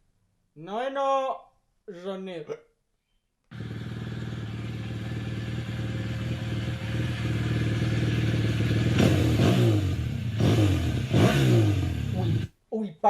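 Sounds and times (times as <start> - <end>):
motorcycle engine revving: 3.5 - 12.5.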